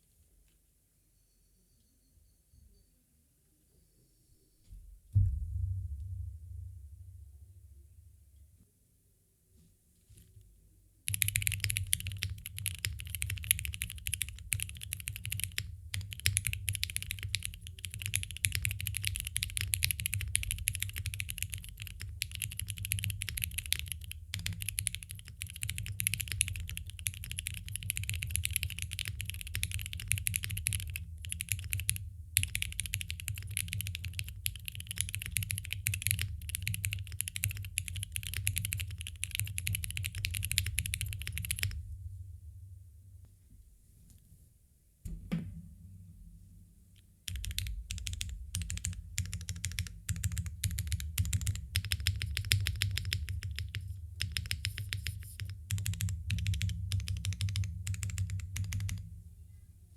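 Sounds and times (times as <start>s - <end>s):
fast mechanical keyboard typing: 11.1s - 41.8s, 47.3s - 59.0s.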